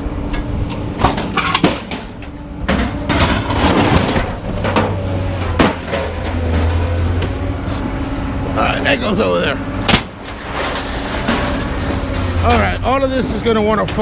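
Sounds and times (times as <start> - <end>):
vehicle engine humming: 0.0 - 14.0
metal pieces rattling and scraping: 1.0 - 5.0, 10.3 - 12.7
scrap metal clanking: 1.0 - 7.0, 9.9 - 12.7.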